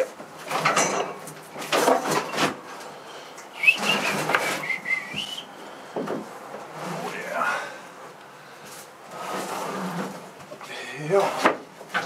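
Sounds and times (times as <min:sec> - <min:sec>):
objects scraping and knocking: 0:00.4 - 0:02.9, 0:03.6 - 0:05.3, 0:08.7 - 0:12.0.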